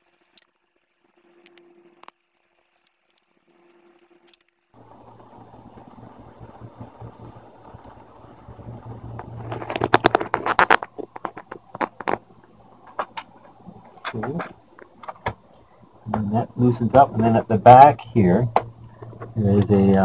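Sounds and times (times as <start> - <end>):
steady low hum: 3.4 - 20.0.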